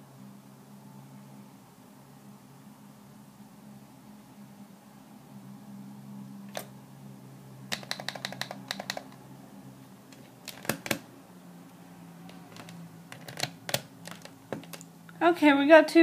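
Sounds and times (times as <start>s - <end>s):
faint steady hum: 0.0s - 16.0s
alarm clock buttons clicking: 7.7s - 9.1s.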